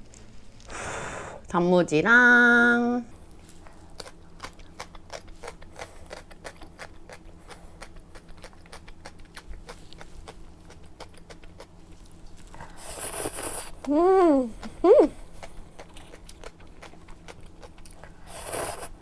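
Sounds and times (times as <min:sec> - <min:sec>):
chewing crunchy pickled radish: 0:03.1 - 0:19.0.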